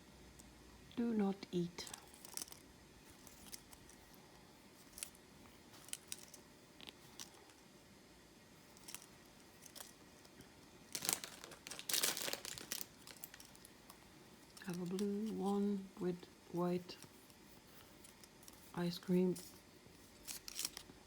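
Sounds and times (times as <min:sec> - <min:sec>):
crinkling rustle: 0:01.8 - 0:07.7, 0:08.6 - 0:21.0
light clicks and rustles: 0:08.6 - 0:15.7.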